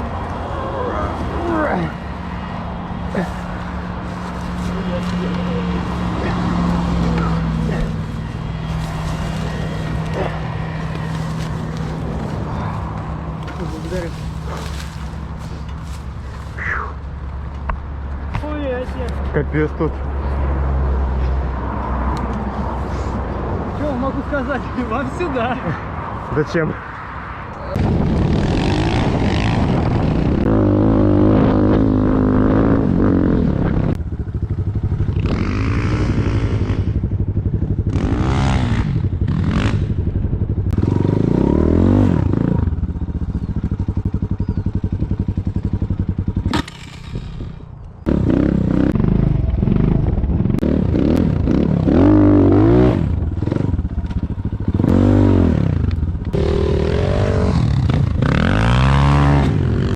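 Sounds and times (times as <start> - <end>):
motorcycle engine revving: 0.0 - 17.2, 27.7 - 59.9.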